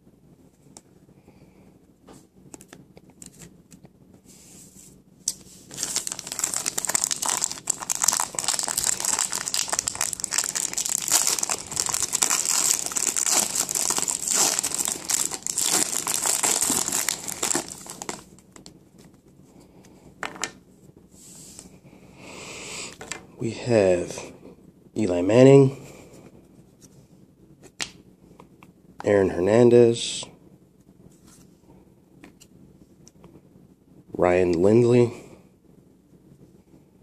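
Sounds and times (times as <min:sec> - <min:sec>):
plastic wrapping crinkling: 0:05.7 - 0:18.7.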